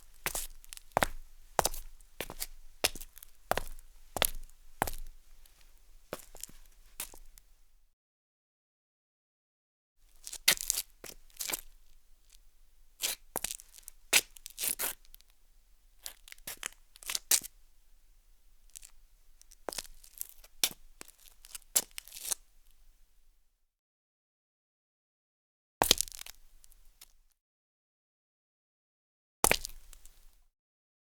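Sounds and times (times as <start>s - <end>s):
footsteps on gritty concrete: 0.0s - 7.4s.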